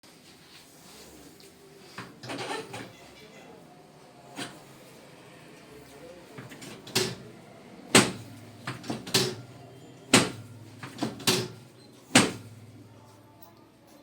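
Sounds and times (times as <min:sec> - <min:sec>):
sharp knocks: 0:07.9 - 0:09.4, 0:10.1 - 0:12.5.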